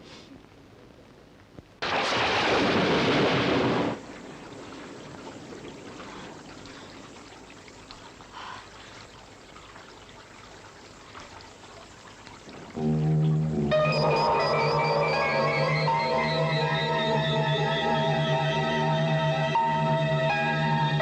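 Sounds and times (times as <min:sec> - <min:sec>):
faint rain hiss: 0:00.0 - 0:21.0
heavy rain: 0:01.8 - 0:07.3.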